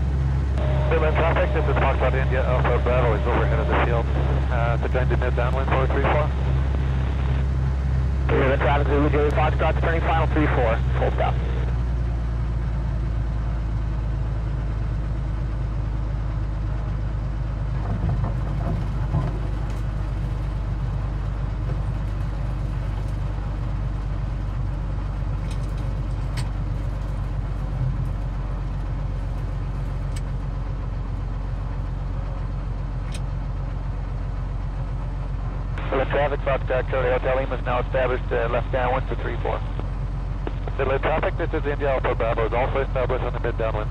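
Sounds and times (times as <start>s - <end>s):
aircraft engine and propeller droning: 0.0s - 43.9s.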